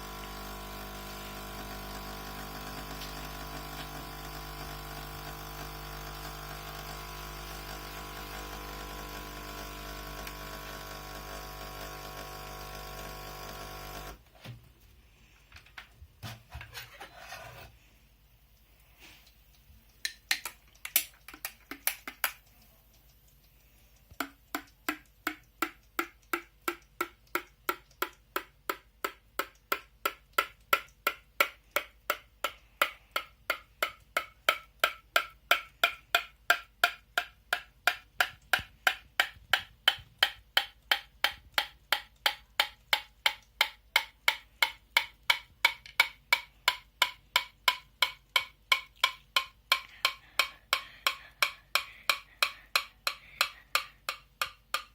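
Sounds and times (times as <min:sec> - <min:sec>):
teaspoon tapping a cup: 0:20.0 - 0:22.5, 0:24.2 - 0:54.9.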